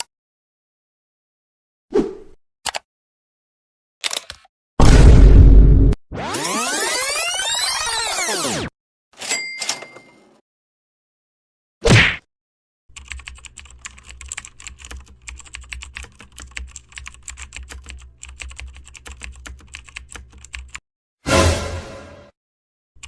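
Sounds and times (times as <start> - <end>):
keyboard typing: 12.9 - 20.8.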